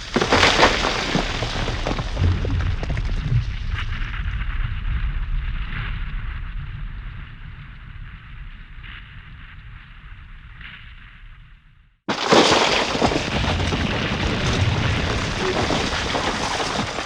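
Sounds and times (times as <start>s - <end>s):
tumbling rocks crackling: 0.0s - 4.2s, 12.1s - 17.0s
deep rumble of sliding rock: 0.0s - 6.0s, 12.1s - 17.0s.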